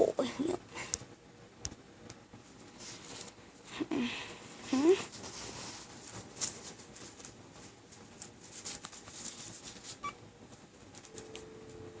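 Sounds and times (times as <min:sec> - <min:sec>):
phone ringing tone: 0:11.1 - 0:12.0.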